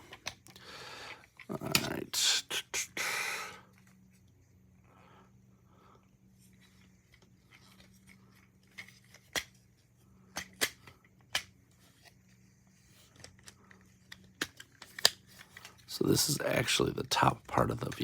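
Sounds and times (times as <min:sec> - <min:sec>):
faint low hum: 0:00.0 - 0:18.0
plastic toy parts clicking: 0:08.6 - 0:09.6, 0:10.3 - 0:11.5, 0:13.1 - 0:15.9.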